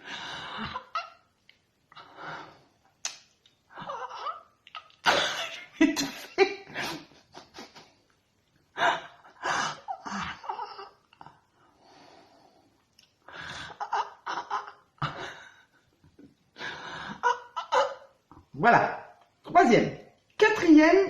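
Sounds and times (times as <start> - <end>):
soft breathing: 11.2 - 13.9.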